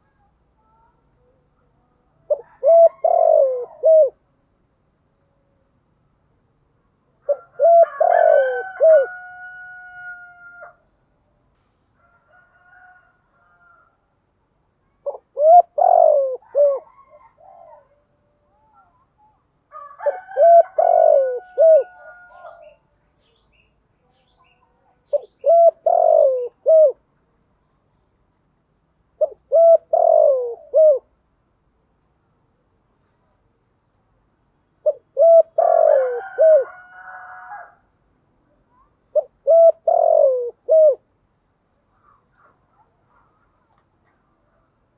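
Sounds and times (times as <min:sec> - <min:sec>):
dove cooing: 0:02.2 - 0:04.2, 0:07.2 - 0:10.8, 0:15.0 - 0:18.9, 0:19.9 - 0:22.8, 0:25.1 - 0:27.0, 0:29.2 - 0:31.2, 0:34.8 - 0:37.8, 0:38.8 - 0:41.1.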